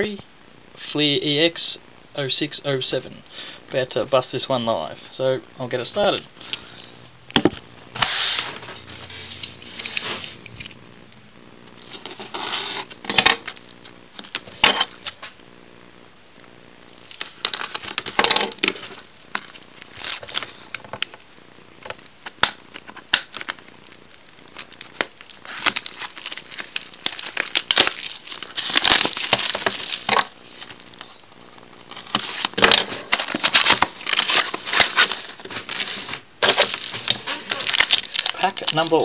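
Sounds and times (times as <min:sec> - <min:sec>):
plastic tearing: 0:11.8 - 0:15.3, 0:17.1 - 0:21.2, 0:21.8 - 0:31.1, 0:31.8 - 0:39.0
plastic wrapping crinkling: 0:17.0 - 0:21.2, 0:21.8 - 0:39.0.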